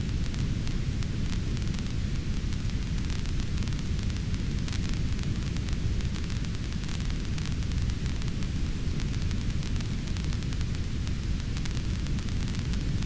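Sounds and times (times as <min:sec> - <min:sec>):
fire crackling and popping: 0:00.0 - 0:13.0.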